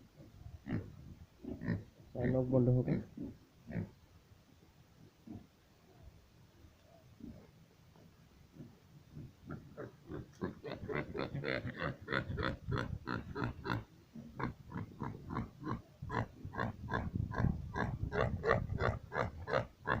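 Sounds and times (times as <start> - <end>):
pig grunting: 0.6 - 3.9, 5.2 - 5.5, 8.5 - 20.0.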